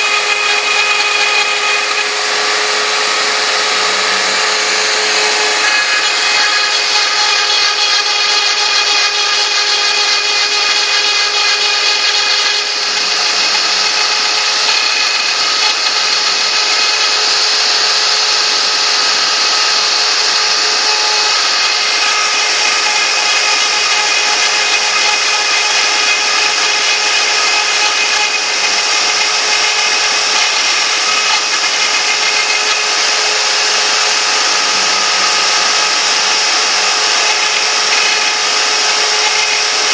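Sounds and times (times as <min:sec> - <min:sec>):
cnc router spindle whine: 0:00.0 - 0:39.9
cutting hiss: 0:28.6 - 0:39.9.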